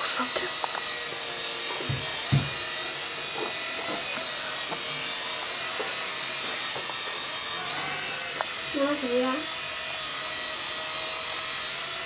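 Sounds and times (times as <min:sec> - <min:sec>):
toy helicopter motor whirring: 0:00.0 - 0:12.0.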